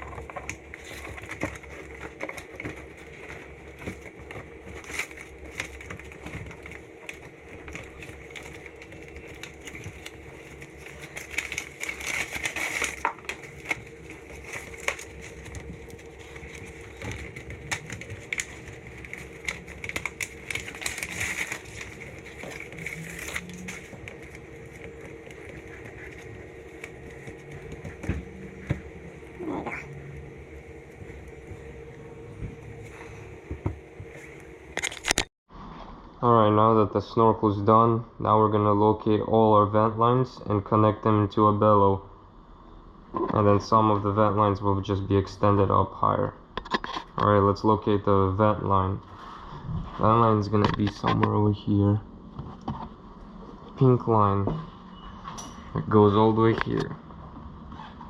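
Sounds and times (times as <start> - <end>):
crinkling and rustling handling: 0.0 - 35.3, 49.0 - 51.6
low hum: 0.0 - 46.6.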